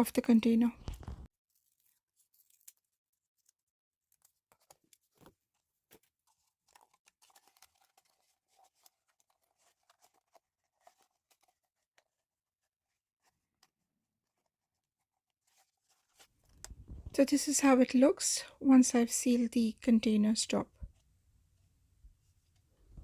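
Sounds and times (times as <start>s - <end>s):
rustling of small objects handled: 0.2s - 17.6s.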